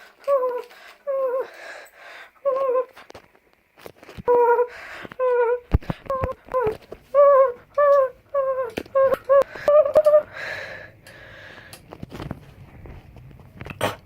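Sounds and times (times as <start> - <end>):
person making high-pitched cries: 0.2 - 1.5, 4.2 - 10.3.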